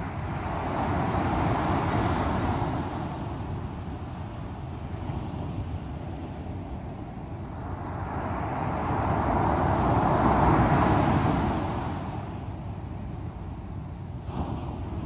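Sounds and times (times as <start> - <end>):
low rumble of surf: 0.0 - 15.0
wave washing on shore: 14.2 - 15.0.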